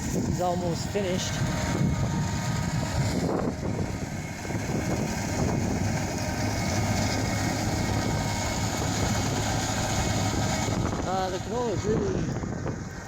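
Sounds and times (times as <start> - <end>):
swather engine humming: 0.0 - 13.0.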